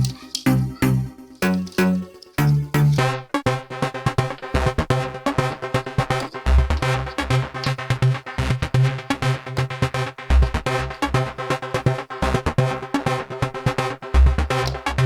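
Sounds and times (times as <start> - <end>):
electronic dance music: 0.0 - 14.8.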